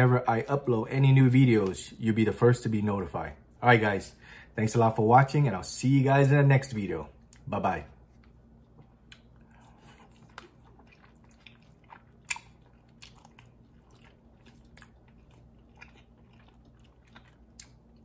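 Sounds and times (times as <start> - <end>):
low electrical hum: 0.0 - 18.0
faint chewing: 7.2 - 18.0.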